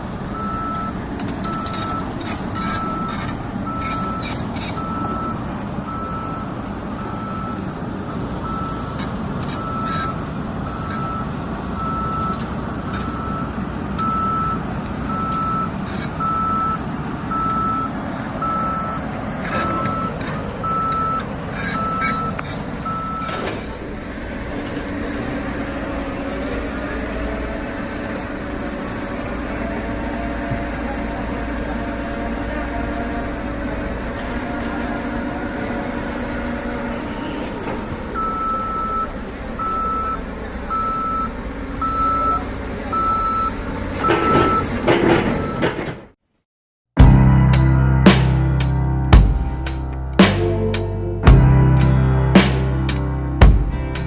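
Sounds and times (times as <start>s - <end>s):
diesel engine rumble: 0.0s - 46.2s, 47.0s - 54.0s
machine alarm beeping: 0.4s - 7.6s, 38.2s - 45.8s.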